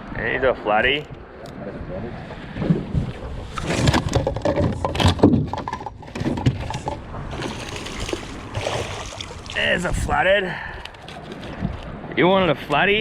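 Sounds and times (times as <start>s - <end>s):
fish flapping against boat floor: 3.6s - 9.6s.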